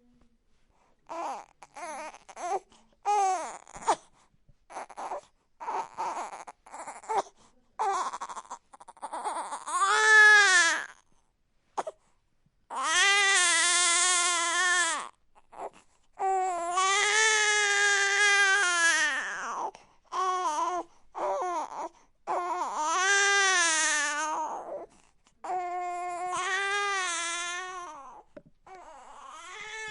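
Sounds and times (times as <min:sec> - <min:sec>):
newborn baby crying: 0:01.0 - 0:04.1, 0:04.7 - 0:11.1, 0:12.7 - 0:29.9.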